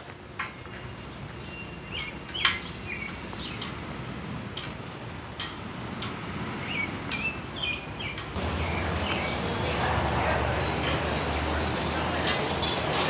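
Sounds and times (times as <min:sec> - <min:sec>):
birds chirping: 0:06.6 - 0:11.7.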